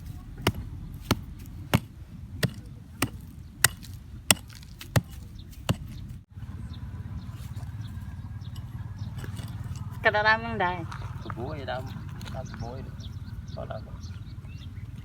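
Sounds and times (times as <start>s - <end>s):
sharp hard strikes of hand tool: 0.0s - 6.2s, 8.5s - 10.0s
steady low rumble: 0.0s - 15.0s.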